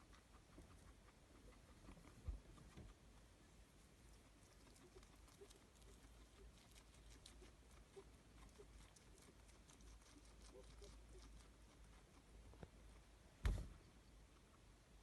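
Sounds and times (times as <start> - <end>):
guinea pig wheezing: 4.2 - 12.3.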